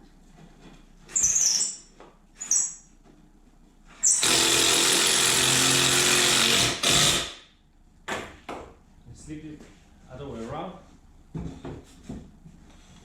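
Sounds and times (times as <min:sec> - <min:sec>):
impact driver driving screws: 0:04.0 - 0:07.4.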